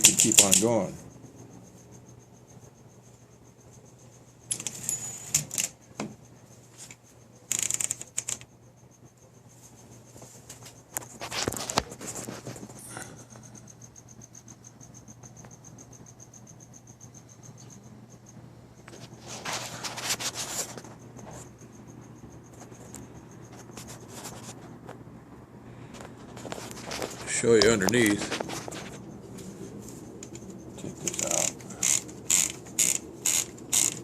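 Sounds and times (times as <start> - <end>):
typewriter clacking and rattling: 0.0 - 0.9, 7.5 - 8.5, 31.0 - 34.0.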